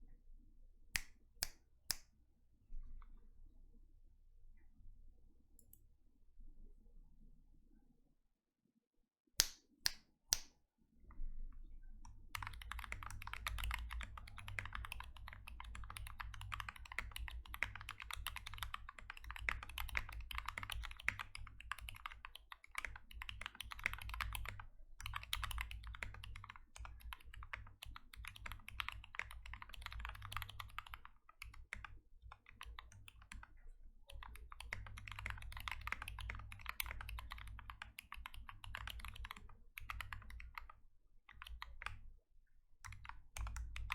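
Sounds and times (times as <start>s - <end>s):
typing on mechanical keyboard: 12.1s - 42.0s, 42.8s - 43.9s.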